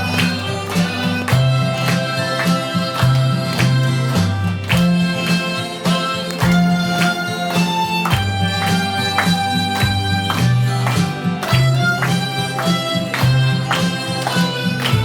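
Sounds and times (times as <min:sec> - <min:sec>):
bass line: 0:00.0 - 0:00.6, 0:14.5 - 0:15.0
harmonicas playing a melody: 0:00.0 - 0:15.0
steady beat: 0:00.0 - 0:15.0.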